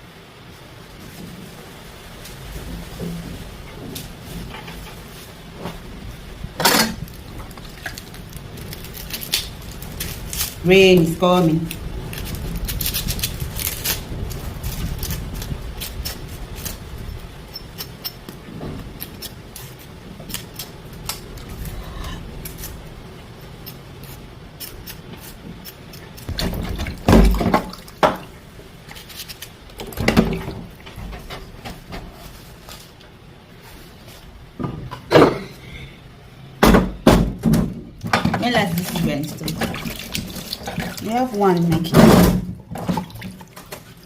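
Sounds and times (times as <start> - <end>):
rushing hiss of rain: 0.0 - 34.6
rain pattering: 0.2 - 17.4, 38.4 - 42.0.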